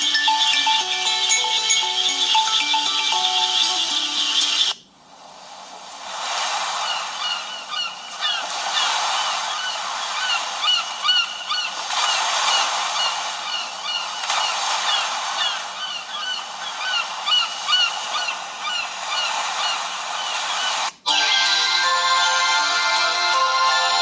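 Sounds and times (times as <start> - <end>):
bird calls ringtone: 0.0 - 4.8.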